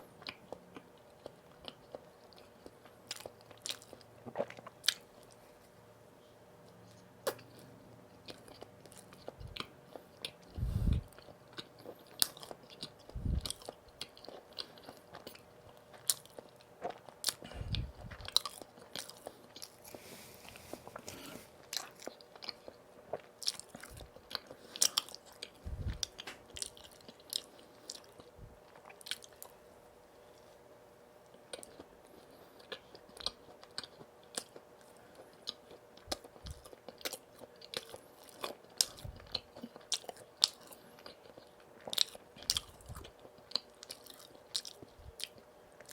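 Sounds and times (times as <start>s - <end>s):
chewing donuts: 0.0s - 5.6s, 6.6s - 45.9s
low thuds: 25.6s - 26.6s.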